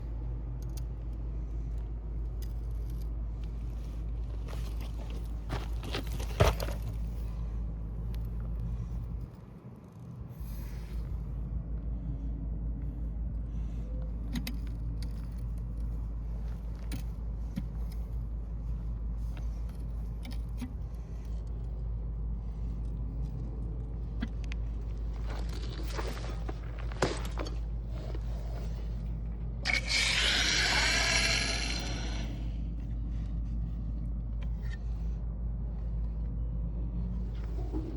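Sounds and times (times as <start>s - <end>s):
low engine rumble: 0.0s - 37.9s
tools scraping and clinking: 29.7s - 32.3s.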